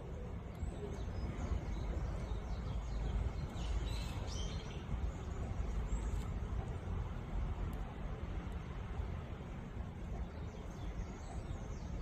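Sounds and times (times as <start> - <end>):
small birds chirping: 0.0 - 6.8, 8.6 - 12.0.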